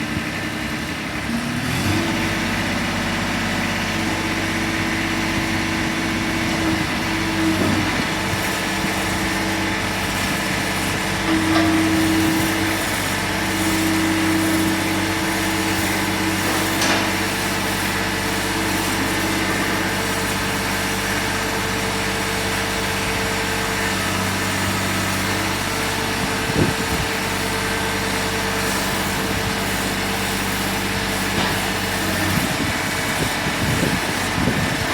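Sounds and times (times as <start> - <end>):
diesel engine running: 0.0 - 34.9
short engine knocks: 16.4 - 17.4.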